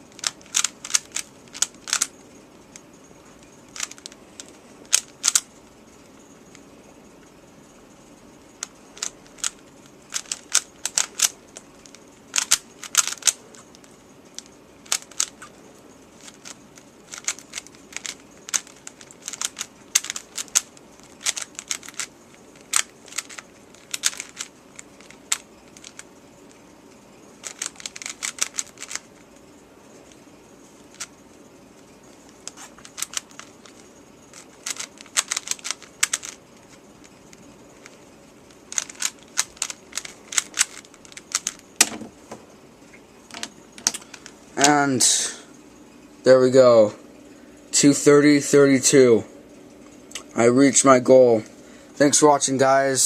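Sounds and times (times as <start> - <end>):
puzzle cube plastic clicking: 0.1 - 2.2, 3.7 - 5.5, 8.6 - 15.5, 16.2 - 26.1, 27.4 - 29.1, 32.4 - 36.4, 38.7 - 41.6.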